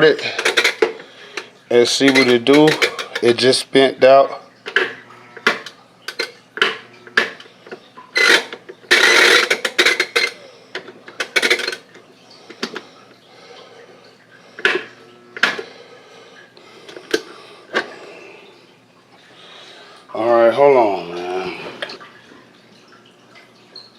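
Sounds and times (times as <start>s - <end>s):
washing machine control clicks: 0.4s - 3.4s.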